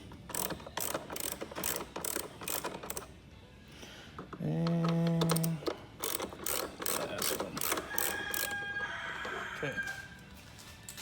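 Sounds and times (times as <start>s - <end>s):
hand ratchet clicking: 0.3s - 3.1s, 4.6s - 8.6s.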